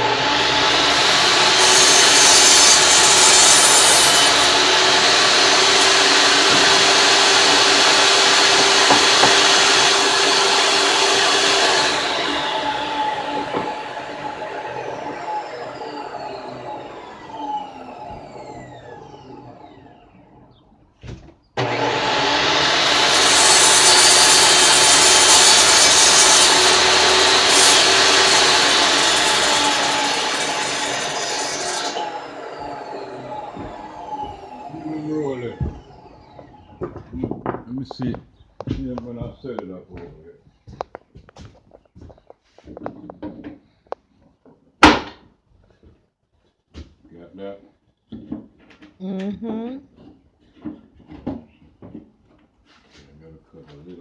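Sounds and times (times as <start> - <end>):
electric saw cutting wood: 0.0 - 20.6, 21.6 - 37.0.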